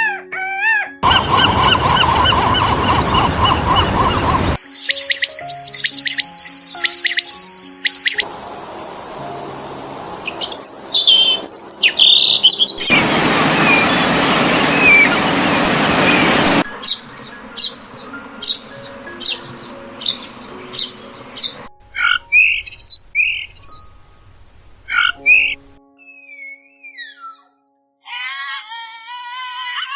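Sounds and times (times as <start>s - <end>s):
birds chirping: 1.0s - 8.3s, 10.2s - 24.0s, 24.8s - 27.5s
loud rushing noise: 12.6s - 17.9s.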